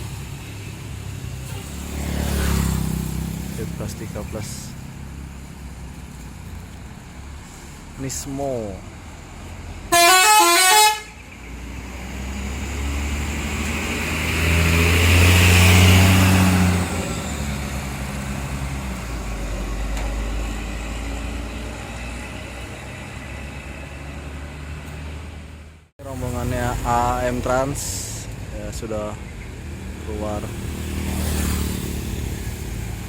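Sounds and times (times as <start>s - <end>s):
bus engine pulling away: 0.0s - 10.0s, 10.8s - 33.0s
musical bus horn: 9.9s - 11.2s.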